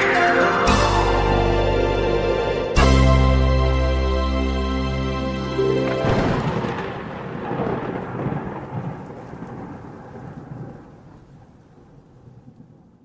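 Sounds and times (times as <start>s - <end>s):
music: 0.0s - 6.5s.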